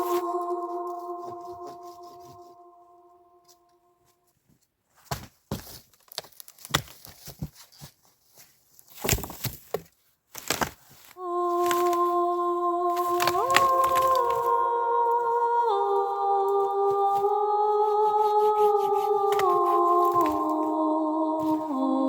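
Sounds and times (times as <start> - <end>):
music of long held tones: 0.0 - 3.9.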